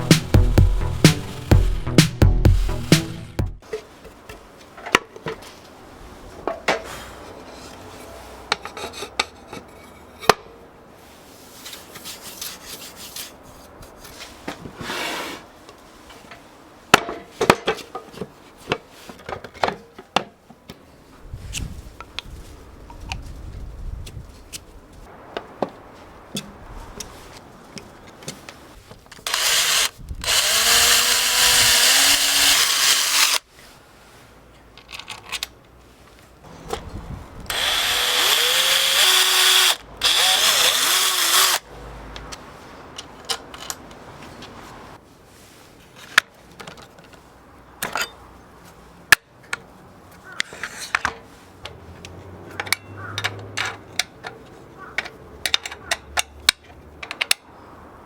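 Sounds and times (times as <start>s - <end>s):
electric drill running: 29.3s - 33.4s, 37.5s - 41.6s
tools clicking and knocking: 55.0s - 57.5s.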